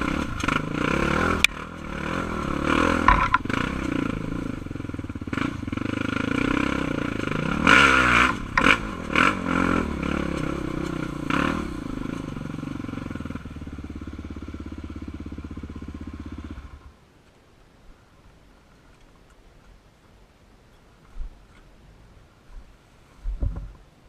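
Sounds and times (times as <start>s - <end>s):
quad engine revving: 0.0s - 16.9s.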